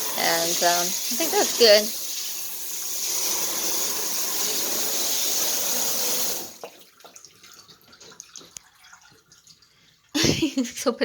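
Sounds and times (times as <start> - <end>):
water spraying: 0.0 - 6.7
faint water drips: 6.6 - 10.8.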